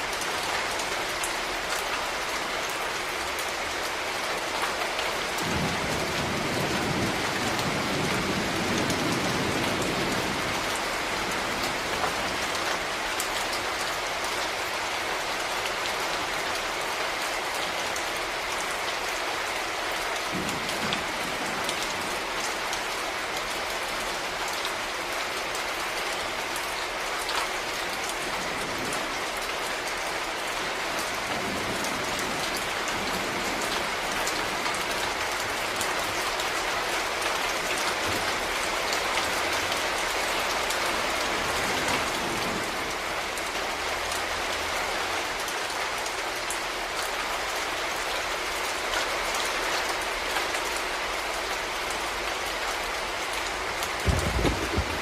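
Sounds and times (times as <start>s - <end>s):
steady rainfall: 0.0s - 55.0s.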